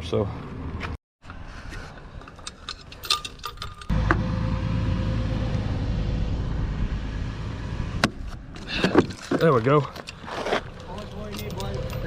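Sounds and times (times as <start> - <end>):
car engine running: 3.9 - 8.1
light metallic clinks: 10.8 - 12.0.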